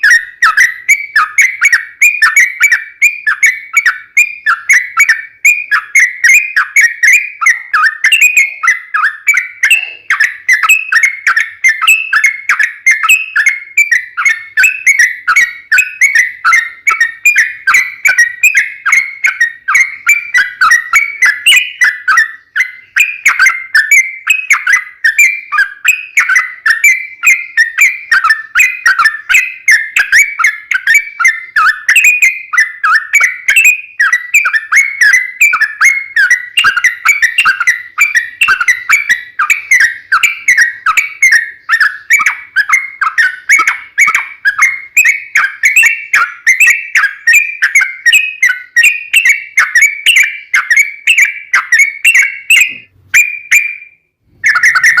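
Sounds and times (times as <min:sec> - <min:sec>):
bird warbling song: 0:00.0 - 0:55.0.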